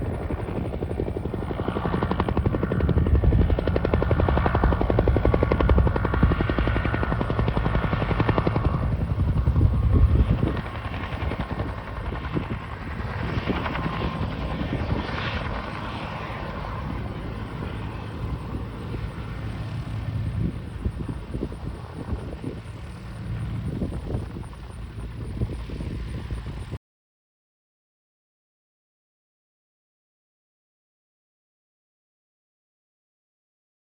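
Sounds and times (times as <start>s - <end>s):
helicopter rotor chopping: 0.0s - 26.8s.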